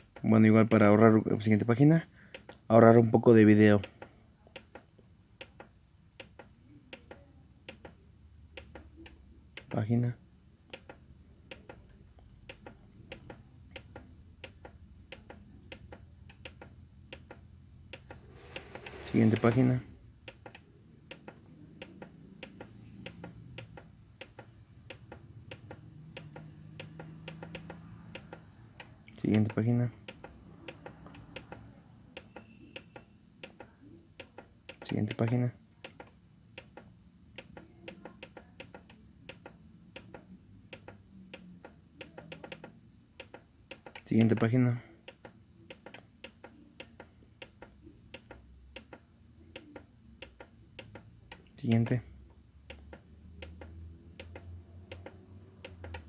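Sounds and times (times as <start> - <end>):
synthesizer buttons clicking: 10.7 - 52.0, 52.6 - 56.0.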